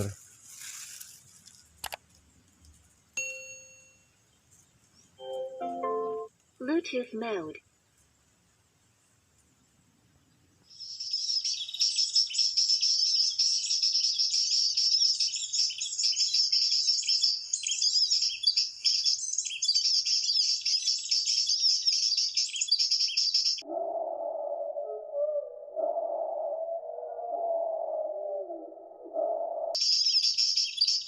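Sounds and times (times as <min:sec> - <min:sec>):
recorded bird chirps and twitters: 0:10.1 - 0:31.0.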